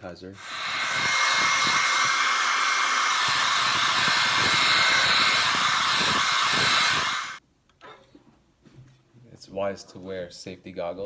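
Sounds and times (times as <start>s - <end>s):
hair dryer blowing: 0.4s - 7.4s.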